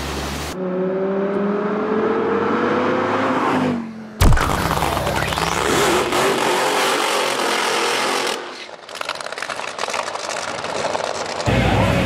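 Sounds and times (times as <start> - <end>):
engine running with rough crackle: 4.2 - 12.0
drag racing engine at full throttle: 4.6 - 8.7, 10.4 - 12.0.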